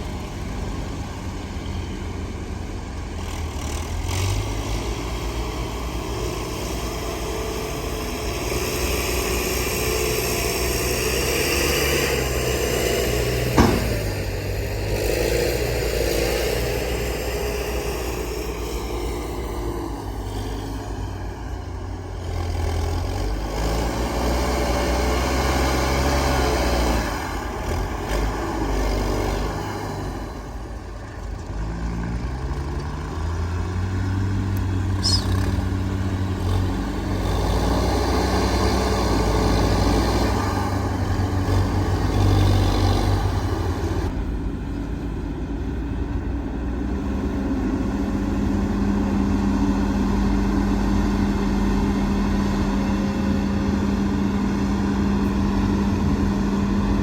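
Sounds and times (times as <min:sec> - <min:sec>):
diesel machinery engine running: 0:00.0 - 0:57.0
sharp metal clank: 0:13.6 - 0:14.2.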